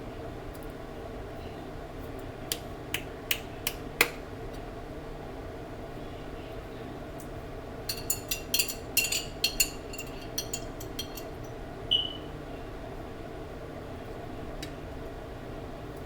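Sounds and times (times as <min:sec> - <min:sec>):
metal utensil clinking on dishes: 0:07.9 - 0:11.5.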